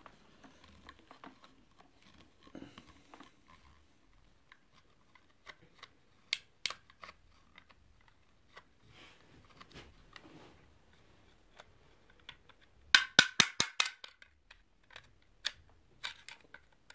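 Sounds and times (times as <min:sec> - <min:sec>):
plastic clicks and ticks: 0:00.6 - 0:08.7.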